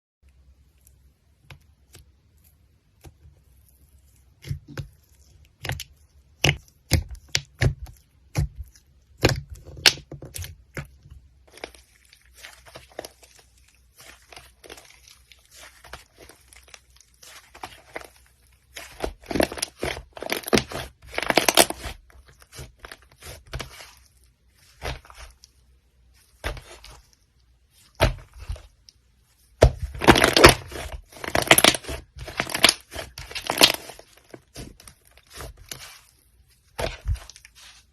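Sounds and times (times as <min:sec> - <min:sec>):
slime clicking and crackling: 0:04.3 - 0:23.9, 0:29.6 - 0:36.0.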